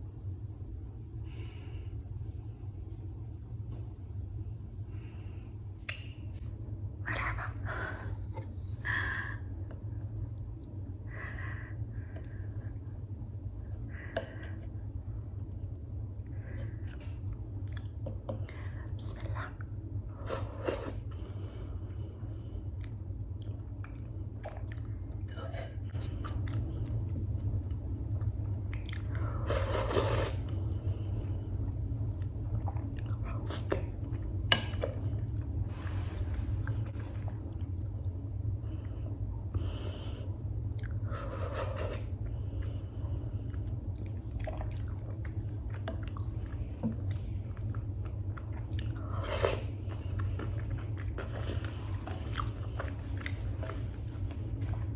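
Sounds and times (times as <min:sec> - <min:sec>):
low hum: 0:00.0 - 0:54.9
chewing and mouth sounds: 0:16.7 - 0:18.5, 0:22.7 - 0:30.9, 0:31.7 - 0:39.1, 0:40.4 - 0:54.9.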